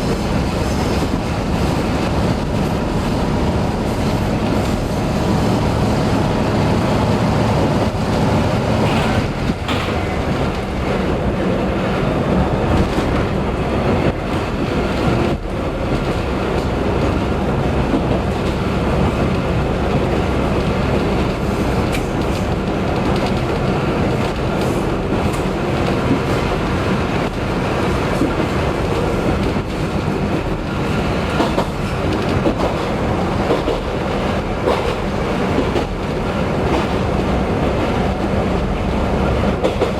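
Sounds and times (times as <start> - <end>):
diesel train engine rumble: 0.0 - 39.9
wheels clicking over rail joints: 8.7 - 38.8, 39.4 - 39.9.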